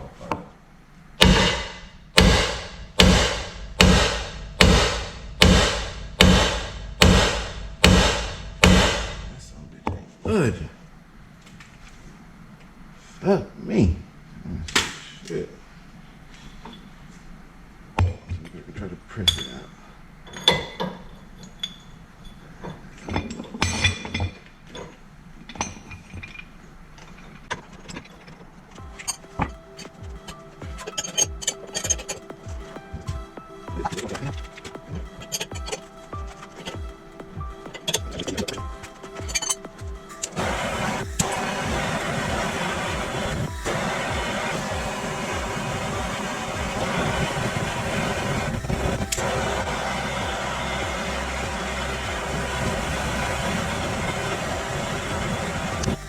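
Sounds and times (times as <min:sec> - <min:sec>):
hammer striking metal: 0:01.2 - 0:09.4.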